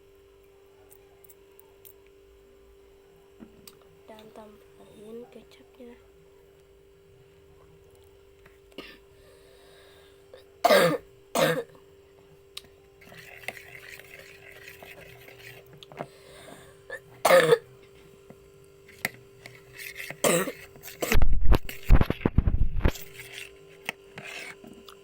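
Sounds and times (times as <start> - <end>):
person coughing: 8.8 - 9.1, 10.6 - 11.8, 16.9 - 17.7, 20.2 - 21.2.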